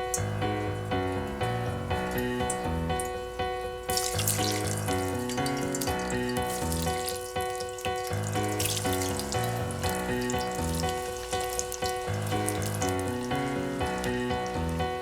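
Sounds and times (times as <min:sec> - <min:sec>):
tap water running into sink: 0:00.0 - 0:15.0.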